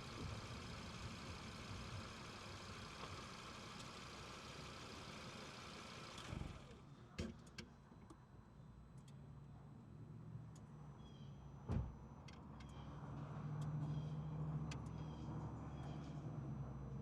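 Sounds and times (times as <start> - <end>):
car engine running at low revs: 0.0 - 7.2, 11.8 - 17.0.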